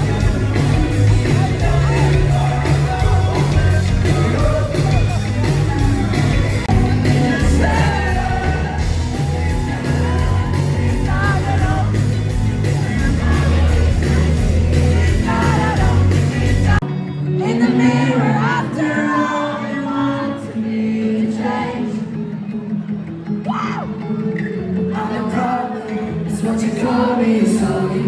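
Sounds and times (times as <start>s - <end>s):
heavy bass: 0.0s - 16.8s
steady drum beat: 0.0s - 16.8s
pop-rock band playing: 0.0s - 19.6s
person singing: 0.0s - 22.1s.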